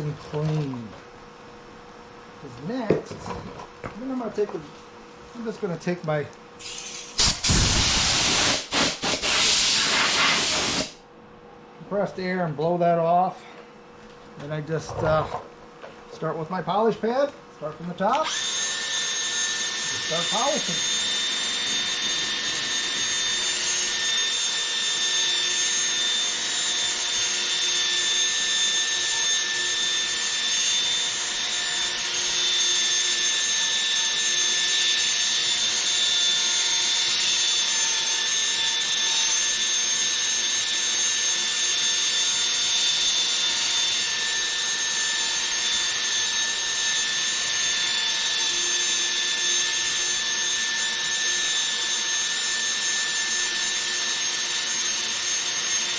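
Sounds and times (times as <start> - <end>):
drill motor whine: 6.6 - 11.0, 18.1 - 55.9
polishing pad rubbing hiss: 6.6 - 11.0.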